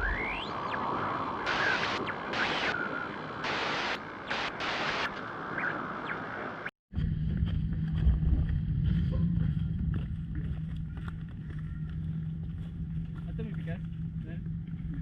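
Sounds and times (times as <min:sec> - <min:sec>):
faint gliding whistles: 0:00.0 - 0:03.2
static hiss: 0:00.0 - 0:06.7.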